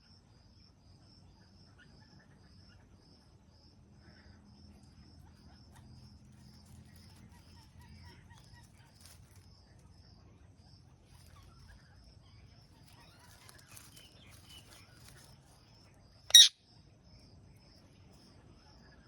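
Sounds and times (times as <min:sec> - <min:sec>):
faint insect chirping: 0:00.0 - 0:19.0
soft bird chirps: 0:04.8 - 0:19.0.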